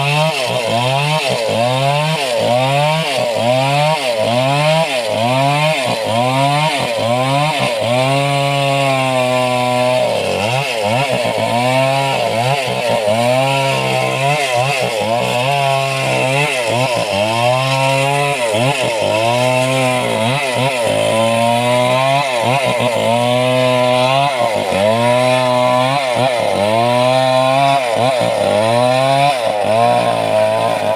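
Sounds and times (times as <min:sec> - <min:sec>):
chainsaw cutting wood: 0:00.0 - 0:30.9.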